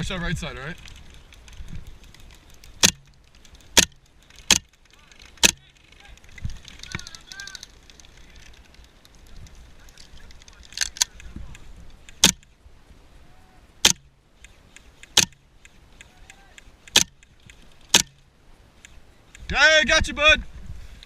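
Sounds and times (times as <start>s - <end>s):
airsoft gun firing single shots: 2.8s - 3.1s, 3.7s - 4.7s, 12.1s - 12.5s, 13.8s - 14.1s, 15.0s - 15.4s, 16.8s - 17.2s, 17.9s - 18.2s.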